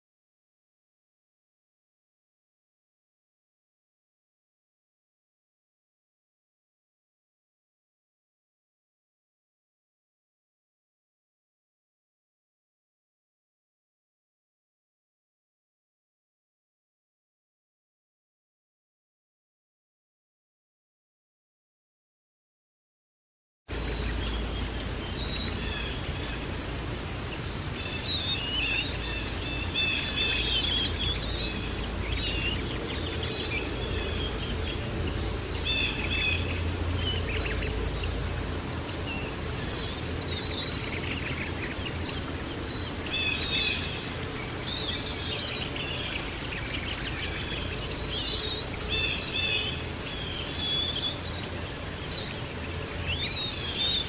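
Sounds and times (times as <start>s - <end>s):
birds chirping and trilling: 23.7s - 54.0s.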